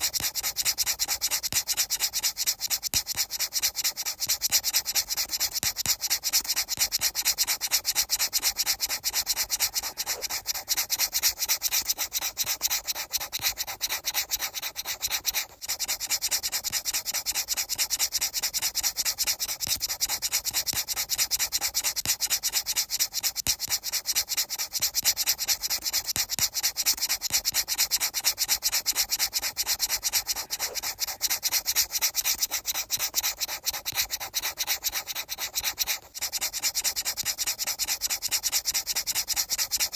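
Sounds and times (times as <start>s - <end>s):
rapid dry scraping strokes: 0.0s - 39.9s.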